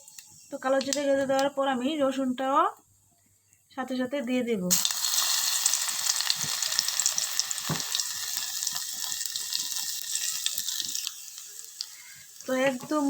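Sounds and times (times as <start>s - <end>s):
garlic sizzling in hot oil: 0.0s - 1.6s, 4.7s - 13.0s.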